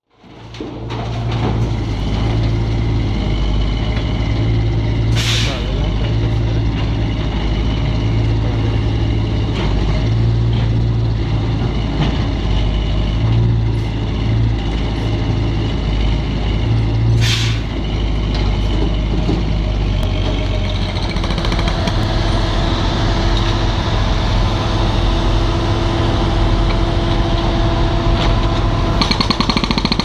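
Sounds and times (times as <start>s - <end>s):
diesel engine humming: 0.6s - 30.0s
hiss of released air: 5.2s - 5.6s, 17.2s - 17.8s.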